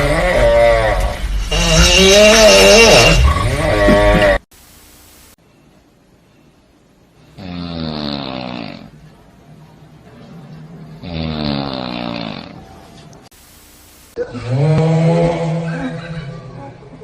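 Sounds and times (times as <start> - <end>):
person snoring loudly: 7.4 - 8.9, 11.0 - 12.6.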